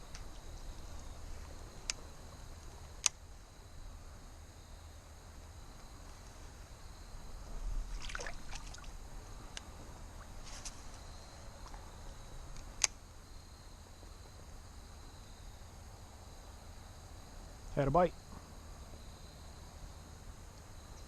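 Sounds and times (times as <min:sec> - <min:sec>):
creek water splashing: 0:07.7 - 0:09.4, 0:10.0 - 0:11.8.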